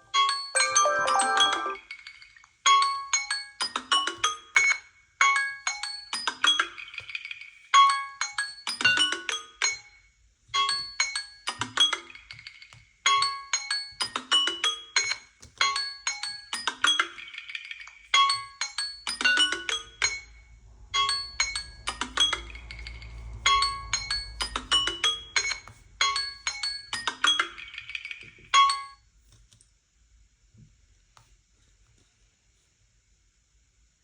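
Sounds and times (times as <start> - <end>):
marimba alarm tone melody: 0.6 - 1.8.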